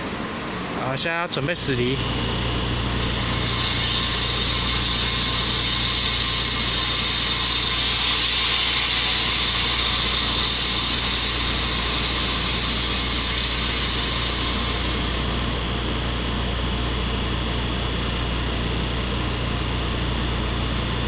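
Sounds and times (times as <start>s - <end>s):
electric train pulling out: 1.6s - 16.3s.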